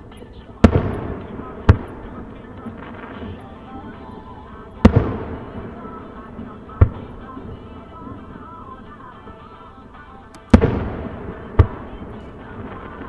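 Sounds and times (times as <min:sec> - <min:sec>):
firework shells bursting: 0:00.0 - 0:09.5, 0:10.1 - 0:13.0
faint music: 0:00.0 - 0:13.0.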